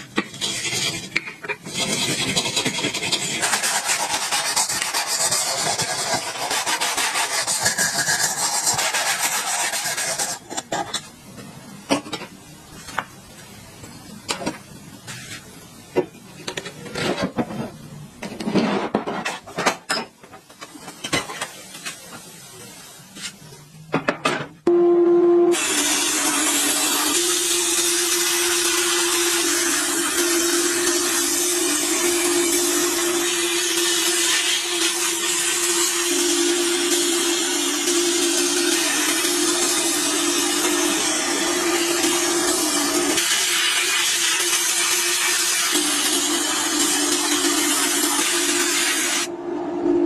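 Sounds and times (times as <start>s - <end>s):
steady hum: 45.8s - 50.0s.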